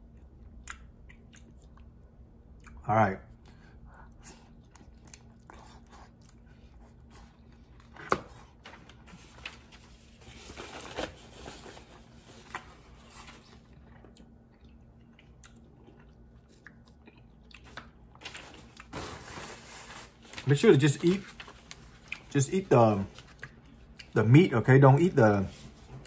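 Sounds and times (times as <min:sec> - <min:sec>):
person chewing close up: 0:00.0 - 0:02.8, 0:03.4 - 0:07.9, 0:13.6 - 0:18.9, 0:21.8 - 0:22.4, 0:23.2 - 0:24.2.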